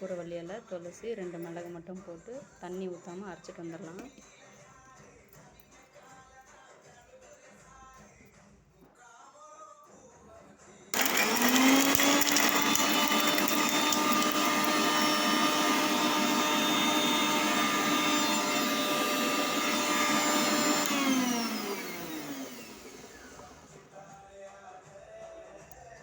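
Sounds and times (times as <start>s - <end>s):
mixer grinder motor: 11.0s - 23.8s.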